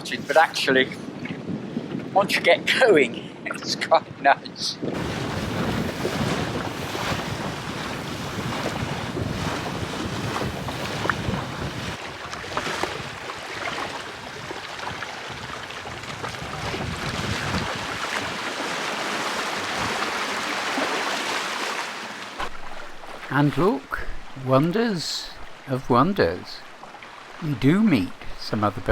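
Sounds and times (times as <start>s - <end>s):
wind rumbling on microphone: 0.0s - 3.4s, 4.0s - 18.6s, 19.5s - 20.2s
water splashing along hull: 4.9s - 28.9s.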